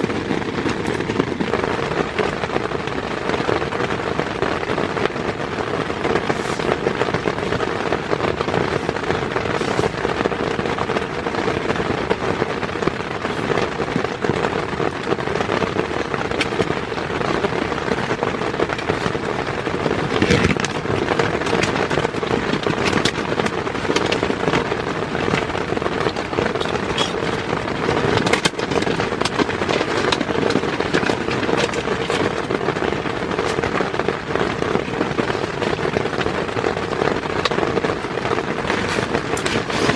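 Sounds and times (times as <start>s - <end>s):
heavy rain on a tent: 0.0s - 39.9s.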